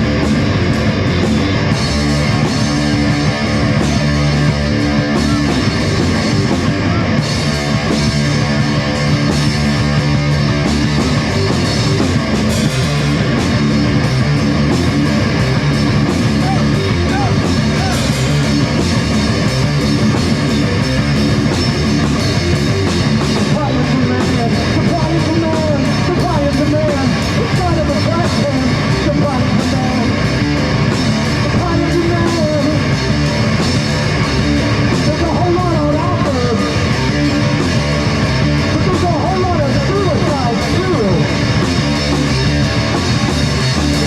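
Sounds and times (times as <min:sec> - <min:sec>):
rock band playing: 0:00.0 - 0:44.0.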